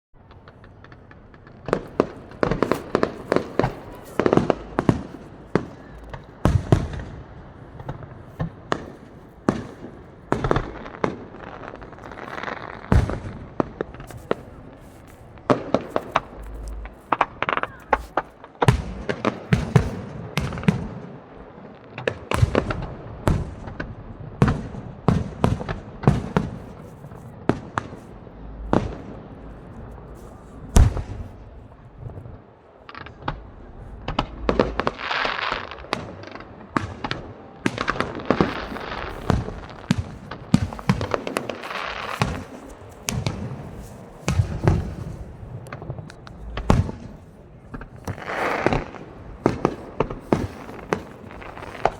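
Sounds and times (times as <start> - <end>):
aerial fireworks bangs: 7.8 - 14.3, 47.7 - 51.9.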